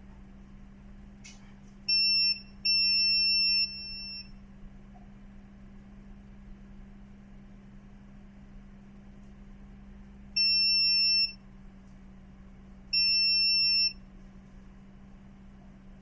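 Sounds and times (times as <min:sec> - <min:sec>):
faint steady hum: 0:00.0 - 0:16.0
multimeter high beep: 0:01.9 - 0:04.4, 0:10.4 - 0:11.4, 0:12.9 - 0:14.1.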